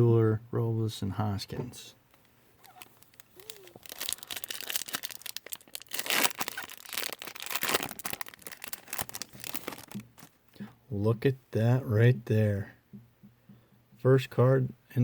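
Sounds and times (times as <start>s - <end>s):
wrapper tearing and crinkling: 2.6s - 10.4s.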